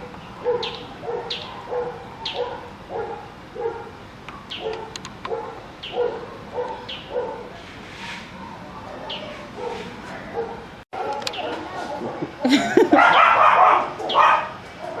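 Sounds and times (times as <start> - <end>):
small dogs barking: 0.0 - 7.6, 8.3 - 15.0
high dog yips: 12.9 - 15.0.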